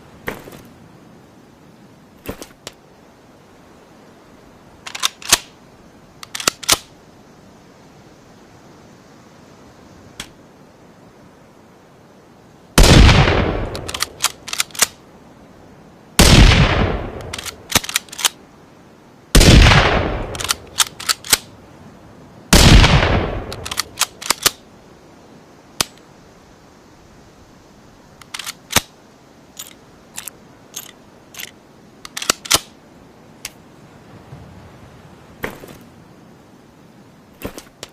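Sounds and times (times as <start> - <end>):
sharp mechanical clicks: 4.9 - 5.5, 6.2 - 6.9, 13.6 - 15.0, 17.2 - 18.4, 20.2 - 21.5, 23.5 - 24.6, 28.2 - 28.9, 29.6 - 32.7
loud rifle shots: 12.8 - 14.0, 16.2 - 17.8, 19.4 - 20.6, 22.5 - 23.8.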